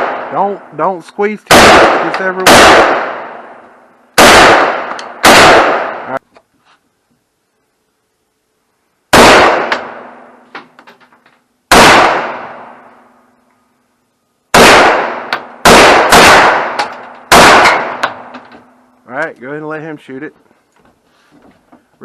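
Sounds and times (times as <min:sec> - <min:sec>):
rifle shots echoing: 0:00.0 - 0:00.8, 0:01.5 - 0:03.6, 0:04.2 - 0:06.2, 0:09.1 - 0:10.4, 0:11.7 - 0:13.0, 0:14.5 - 0:18.4.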